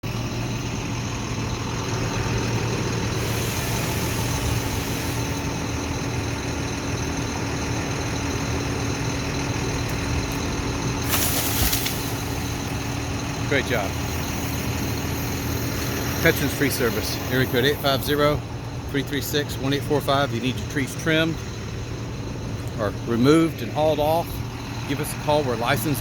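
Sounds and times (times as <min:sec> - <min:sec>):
heavy truck engine running: 0:00.0 - 0:26.0
burst of rushing noise: 0:11.0 - 0:12.6.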